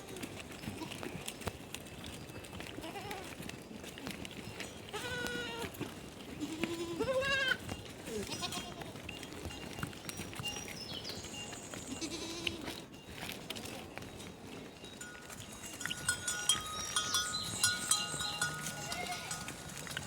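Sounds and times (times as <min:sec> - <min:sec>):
animals bleating: 0:00.0 - 0:01.4, 0:02.6 - 0:03.4, 0:04.9 - 0:05.8, 0:06.4 - 0:09.1, 0:11.8 - 0:12.9, 0:16.0 - 0:20.0.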